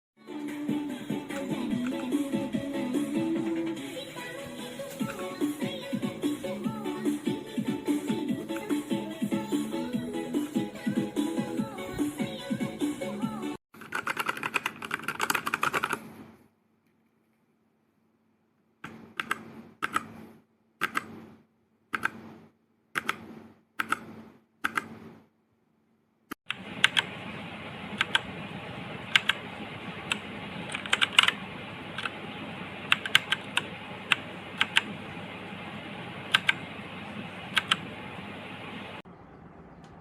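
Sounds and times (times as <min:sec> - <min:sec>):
mechanical keyboard keys clacking: 0:13.8 - 0:16.0, 0:28.0 - 0:28.2, 0:29.1 - 0:29.4, 0:30.1 - 0:31.4, 0:32.9 - 0:34.9, 0:36.3 - 0:36.6, 0:37.5 - 0:37.8.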